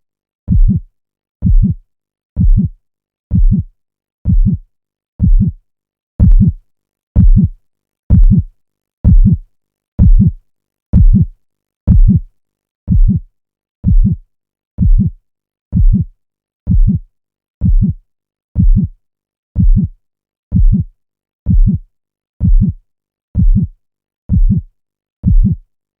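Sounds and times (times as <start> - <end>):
slow heartbeat: 0.5 - 1.8, 2.4 - 3.7, 4.3 - 4.6, 5.2 - 5.6, 6.2 - 6.6, 7.2 - 9.4, 10.0 - 10.4, 11.0 - 11.3, 11.9 - 12.3, 12.9 - 13.2, 13.8 - 14.2, 14.8 - 15.2, 15.8 - 16.1, 16.7 - 17.0, 17.6 - 18.0, 18.6 - 19.0, 19.6 - 19.9, 20.5 - 20.9, 21.5 - 21.8, 22.4 - 22.8, 23.4 - 23.7, 24.3 - 25.6.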